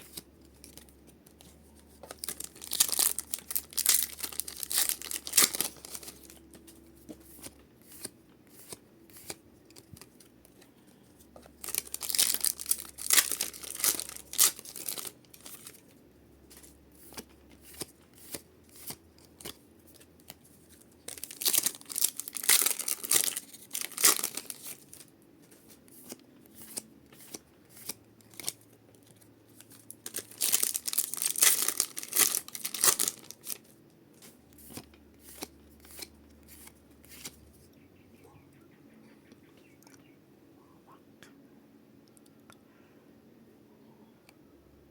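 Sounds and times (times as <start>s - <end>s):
cards clicking and rustling: 0.0s - 15.9s, 16.5s - 37.4s
foil packs tearing and crinkling: 2.1s - 6.4s, 11.6s - 15.8s, 21.1s - 25.1s, 29.6s - 33.6s.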